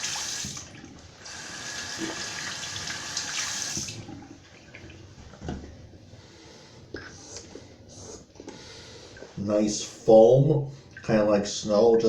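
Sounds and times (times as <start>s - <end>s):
sink faucet running: 0.0s - 4.1s.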